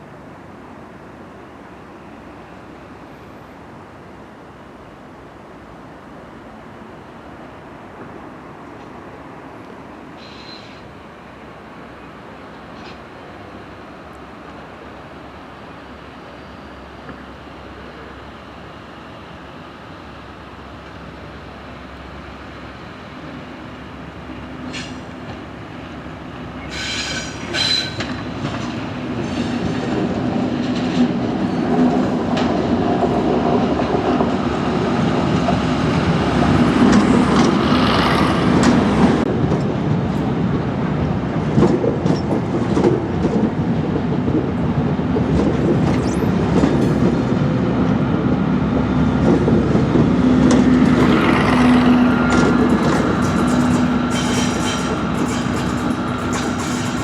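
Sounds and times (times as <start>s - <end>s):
train engine hum: 0.0s - 57.0s
rail clatter: 24.2s - 57.0s.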